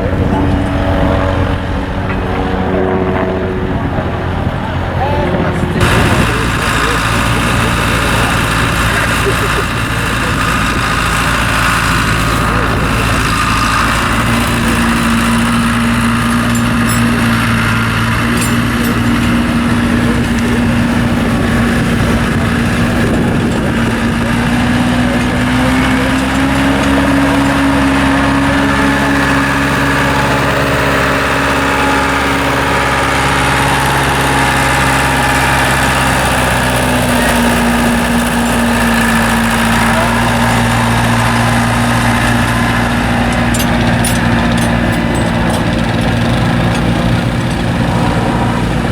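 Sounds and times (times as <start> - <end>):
tractor engine running: 0.0 - 48.9.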